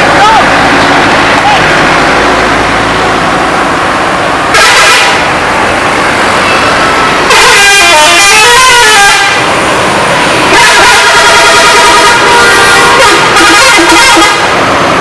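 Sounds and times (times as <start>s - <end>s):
steady background noise: 0.0s - 15.0s
bus horn blast: 4.5s - 5.3s, 7.3s - 9.5s, 10.4s - 14.6s
multi-tone horn playing a tune: 4.6s - 5.2s, 7.3s - 9.4s, 10.5s - 14.5s.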